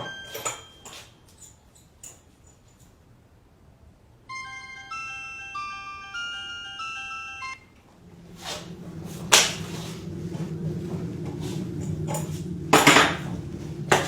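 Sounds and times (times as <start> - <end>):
low steady hum: 0.0 - 14.0
glockenspiel music sting: 4.3 - 7.6
sharp knocks and clatters: 9.2 - 14.0.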